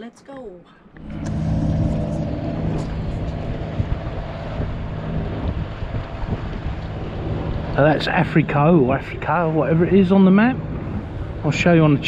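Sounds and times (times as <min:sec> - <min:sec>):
boat engine running: 0:00.9 - 0:12.0
wind buffeting microphone: 0:01.0 - 0:12.0.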